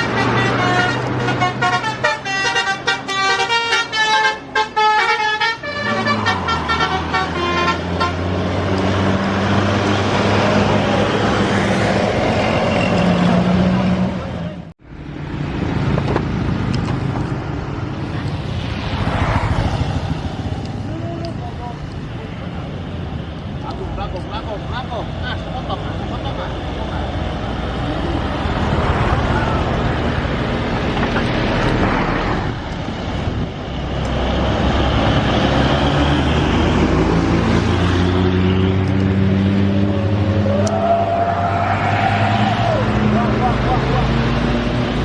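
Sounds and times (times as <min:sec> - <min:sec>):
road noise rushing: 0:00.0 - 0:45.0
traffic noise: 0:00.0 - 0:45.0
large vehicle engine passing: 0:05.9 - 0:45.0.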